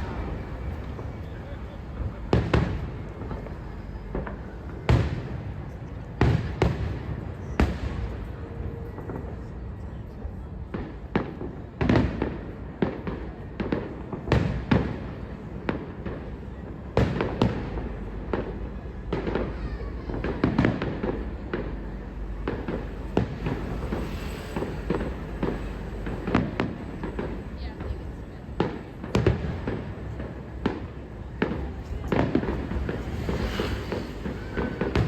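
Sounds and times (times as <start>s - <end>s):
fireworks bursting in bangs: 0.0s - 9.3s, 22.4s - 35.0s
background rumble: 0.0s - 11.7s, 15.0s - 35.0s.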